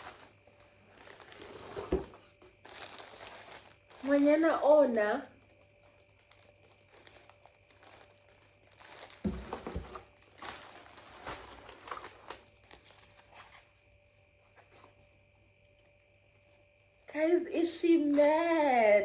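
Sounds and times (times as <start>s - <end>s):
wrapping paper crinkling: 0.0s - 13.7s.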